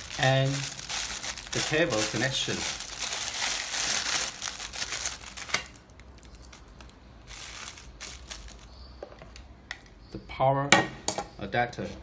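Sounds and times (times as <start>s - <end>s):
packaging crinkling: 0.0s - 8.8s.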